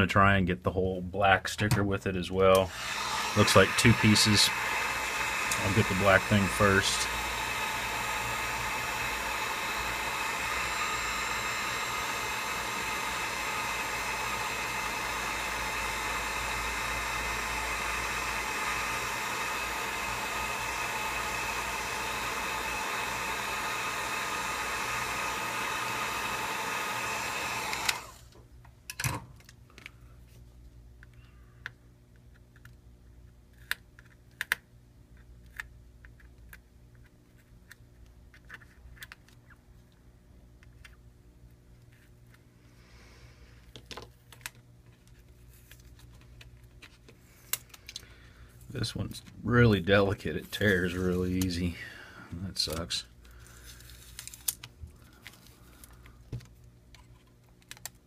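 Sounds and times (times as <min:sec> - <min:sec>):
hot-air blower running: 0:02.4 - 0:28.4, 0:47.2 - 0:56.5.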